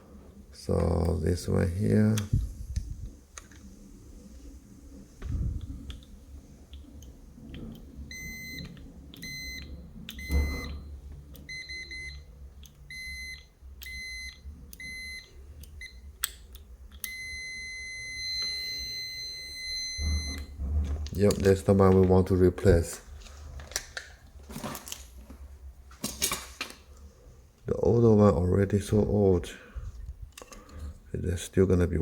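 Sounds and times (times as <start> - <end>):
multimeter beeping: 8.1 - 12.3, 12.9 - 16.1, 17.0 - 20.5.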